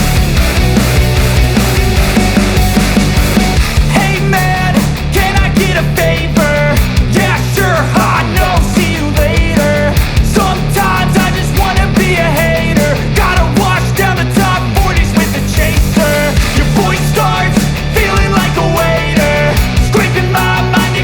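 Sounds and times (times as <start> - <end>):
loud rock music: 0.0 - 21.0.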